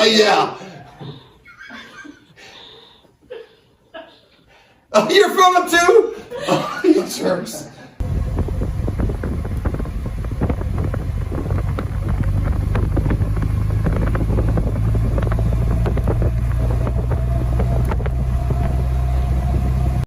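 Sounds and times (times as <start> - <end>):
engine humming: 8.0 - 20.0.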